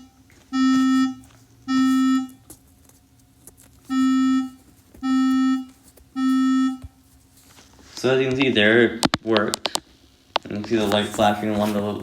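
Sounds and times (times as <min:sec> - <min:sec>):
low buzzy alarm beeps: 0:00.0 - 0:02.5, 0:03.8 - 0:07.1.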